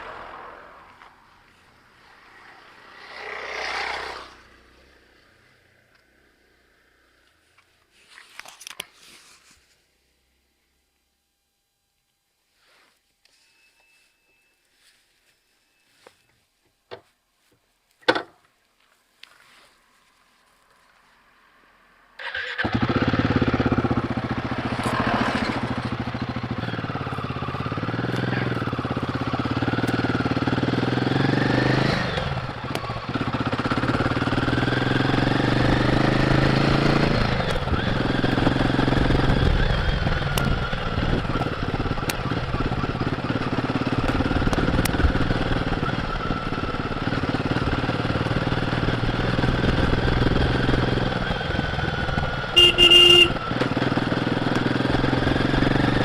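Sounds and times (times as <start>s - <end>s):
motorcycle engine running: 22.3s - 56.0s.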